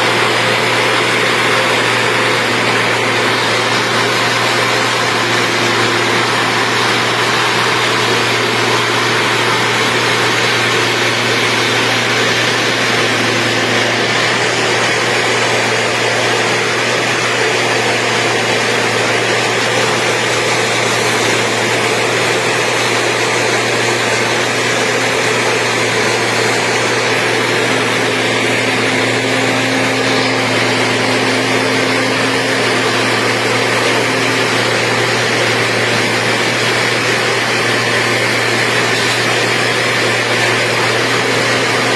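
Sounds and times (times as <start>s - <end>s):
machine engine droning: 0.0s - 41.9s.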